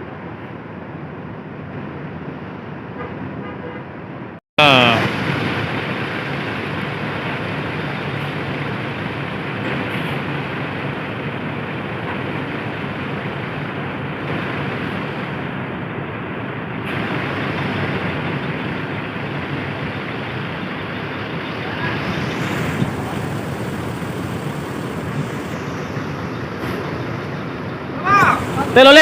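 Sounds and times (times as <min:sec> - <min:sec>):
road traffic passing: 0:00.0 - 0:29.0.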